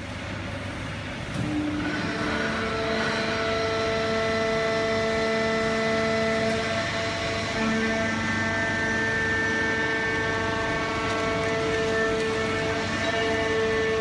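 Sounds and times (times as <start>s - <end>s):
hydraulic press motor humming: 1.2s - 14.0s
held whine: 1.4s - 14.0s.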